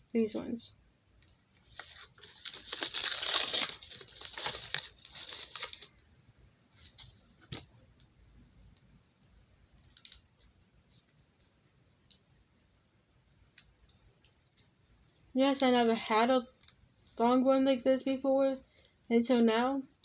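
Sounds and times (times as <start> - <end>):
plastic packaging tearing: 1.6 - 6.0.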